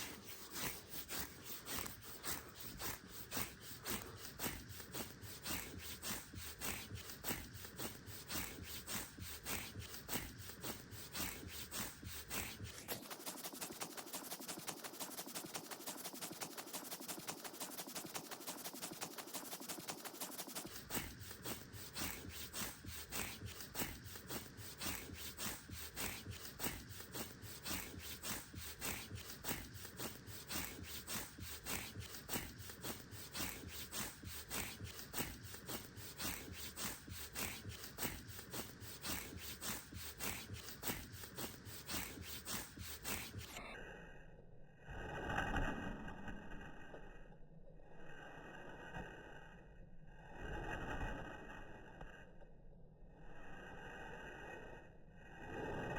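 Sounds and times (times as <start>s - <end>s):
fingernails scratching skin: 0.0s - 43.6s.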